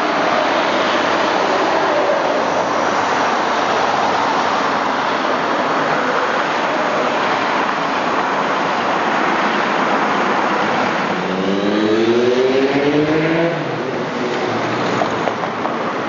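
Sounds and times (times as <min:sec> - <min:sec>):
rushing traffic noise: 0:00.0 - 0:16.0
vehicle motor whine accelerating: 0:11.1 - 0:13.9.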